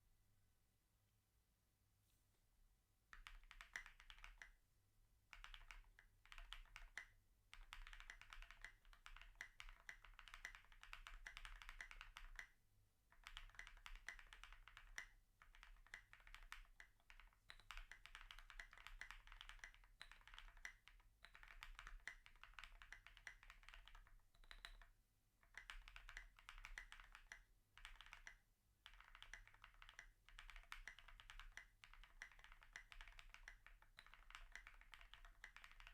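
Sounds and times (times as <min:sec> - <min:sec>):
mechanical keyboard typing: 0:03.1 - 0:04.5, 0:05.3 - 0:12.5, 0:13.2 - 0:35.9.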